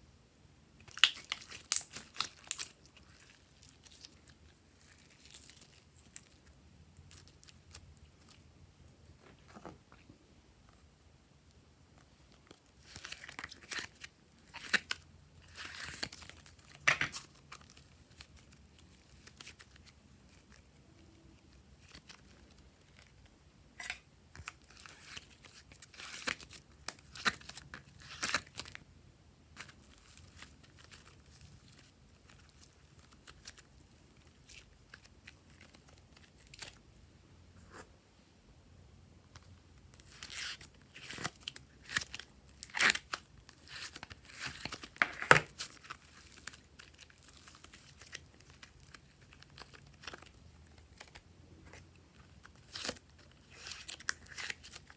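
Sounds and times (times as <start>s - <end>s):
slime crackling and tearing: 0.8s - 8.4s, 39.5s - 54.9s.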